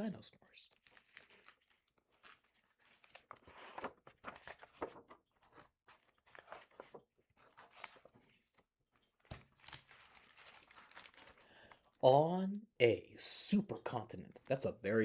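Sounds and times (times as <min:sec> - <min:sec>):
book pages turning: 0:00.7 - 0:11.4.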